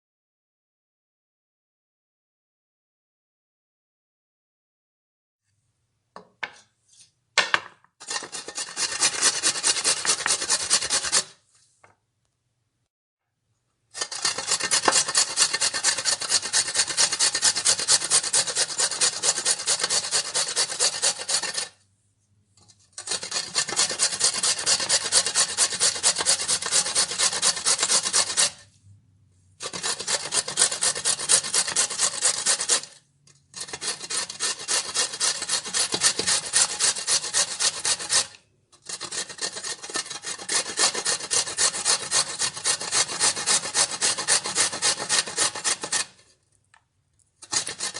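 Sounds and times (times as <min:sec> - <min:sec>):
vegetables grated on a grater: 0:08.0 - 0:11.4, 0:14.0 - 0:21.8, 0:22.9 - 0:28.7, 0:29.6 - 0:46.3, 0:47.4 - 0:47.9.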